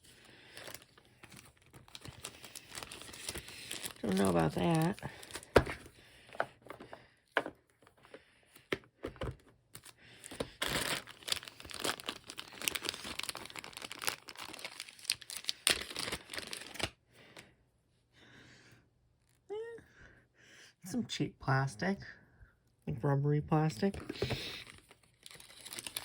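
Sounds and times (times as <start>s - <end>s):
plastic packaging crinkling and tearing: 0.0s - 5.9s, 9.7s - 17.0s, 24.1s - 26.0s.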